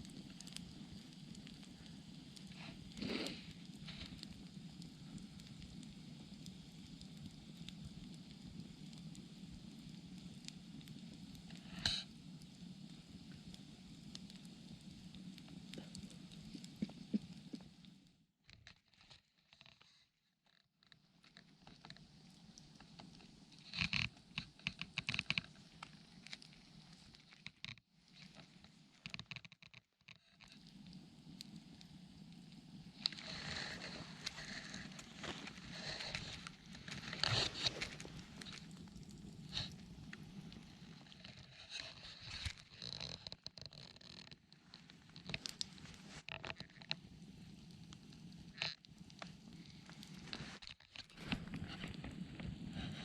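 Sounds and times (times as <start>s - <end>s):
rasping hiss: 0.0s - 9.9s, 32.7s - 43.2s
campfire crackling and popping: 0.0s - 18.2s, 21.3s - 53.0s.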